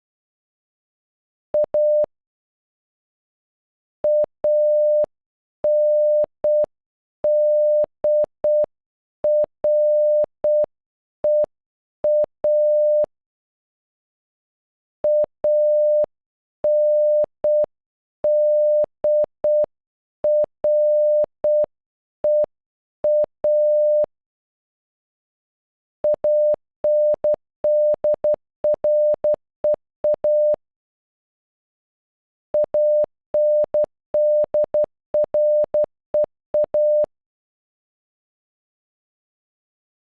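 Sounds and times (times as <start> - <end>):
morse code beeps: 4.1 - 5.1, 5.7 - 6.7, 7.3 - 8.7, 15.1 - 16.1, 18.3 - 19.7, 20.3 - 21.7, 23.1 - 24.1, 26.1 - 30.6, 32.6 - 37.1.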